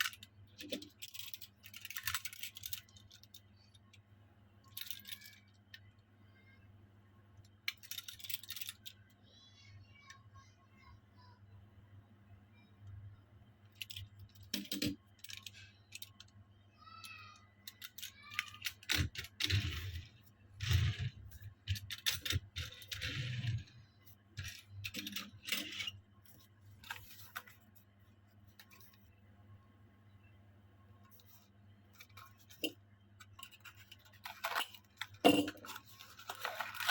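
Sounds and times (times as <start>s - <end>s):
toy cars clicking and clinking: 0.0s - 4.0s, 4.6s - 6.0s, 7.4s - 9.2s, 13.7s - 27.5s, 32.0s - 36.9s
faint steady hum: 0.0s - 36.9s
boxes rustling: 33.8s - 36.9s.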